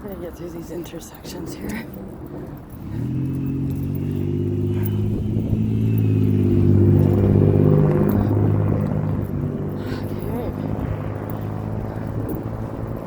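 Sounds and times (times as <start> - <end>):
vehicle engine running: 0.0 - 13.0.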